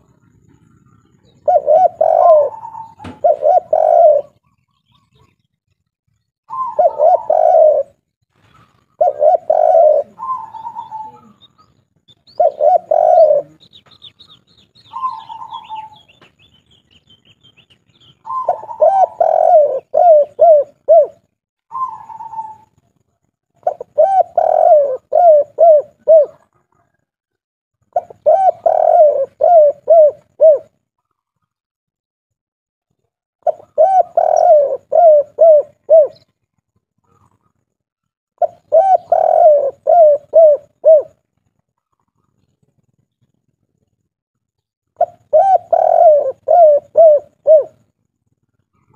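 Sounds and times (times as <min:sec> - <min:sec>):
dove cooing: 0:00.0 - 0:05.4, 0:06.5 - 0:16.4, 0:18.0 - 0:23.0, 0:23.6 - 0:27.1, 0:27.9 - 0:30.8, 0:33.4 - 0:36.3, 0:38.4 - 0:41.2, 0:45.0 - 0:47.9
small bird twittering: 0:08.4 - 0:21.0.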